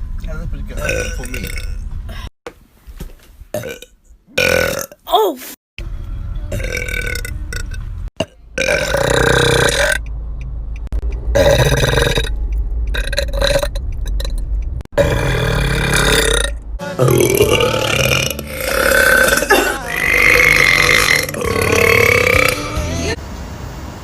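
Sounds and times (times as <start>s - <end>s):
girls burping: 17.2s - 22.8s.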